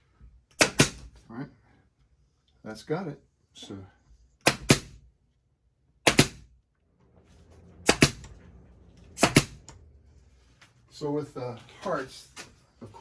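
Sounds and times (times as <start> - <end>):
pin nailer firing: 0.5 - 1.2, 4.4 - 5.0, 6.0 - 6.5, 7.8 - 8.3, 9.2 - 9.7.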